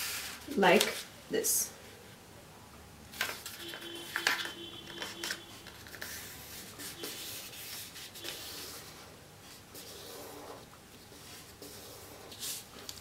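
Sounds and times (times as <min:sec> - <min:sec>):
paper rubbing and rustling: 0:03.1 - 0:13.0
paper crinkling: 0:03.2 - 0:08.5.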